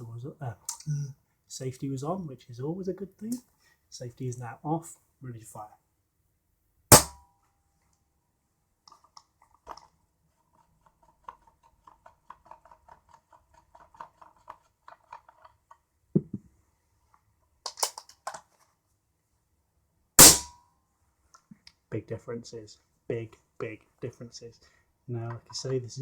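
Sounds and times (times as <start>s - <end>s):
air rifle dry-fire crack: 6.9s - 7.2s, 20.2s - 20.5s.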